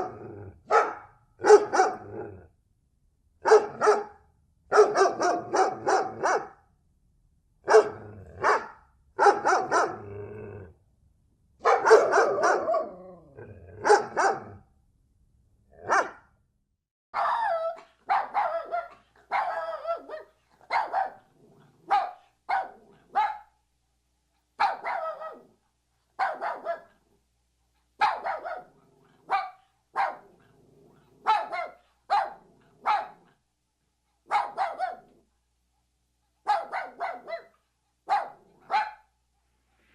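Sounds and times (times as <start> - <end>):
dogs barking: 0.0 - 2.4, 3.4 - 6.6, 7.7 - 10.1, 11.6 - 14.6, 15.8 - 16.2, 17.2 - 23.5, 24.6 - 25.6, 26.2 - 27.0, 28.0 - 30.5, 31.2 - 33.3, 34.2 - 35.2, 36.4 - 39.1.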